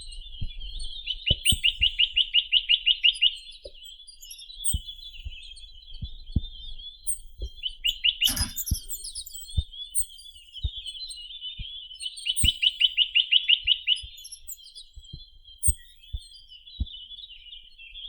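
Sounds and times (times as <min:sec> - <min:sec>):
bird singing high twittering: 0:00.0 - 0:18.0
bird trill: 0:07.0 - 0:11.4.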